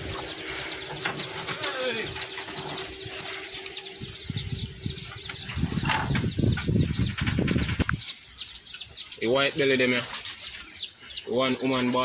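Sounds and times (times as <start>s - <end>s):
low rustling and thumping: 5.2s - 8.1s.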